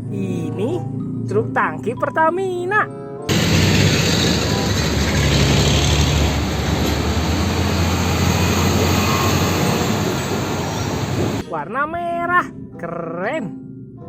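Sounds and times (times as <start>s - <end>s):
heavy vehicle rumble: 3.3s - 11.4s.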